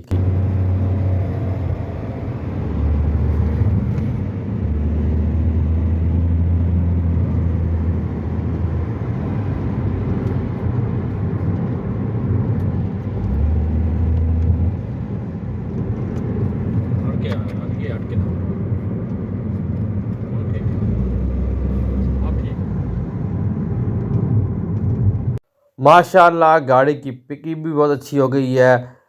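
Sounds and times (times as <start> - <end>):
car engine and road rumble: 0.0 - 25.4.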